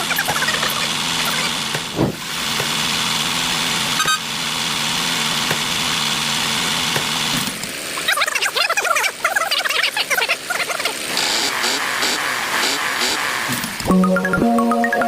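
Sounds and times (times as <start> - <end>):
thump: 2.0 - 2.2.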